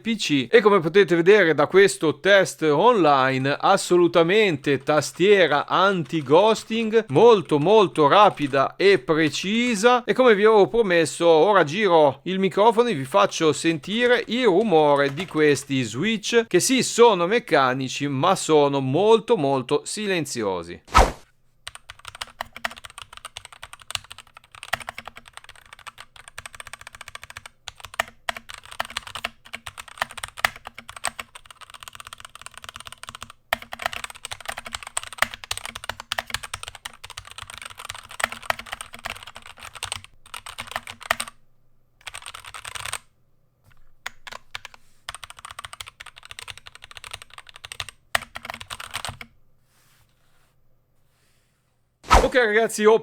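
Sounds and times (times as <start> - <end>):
fast keyboard typing: 2.3 - 9.9, 12.7 - 15.9, 21.6 - 41.4, 42.0 - 43.1, 44.0 - 49.3.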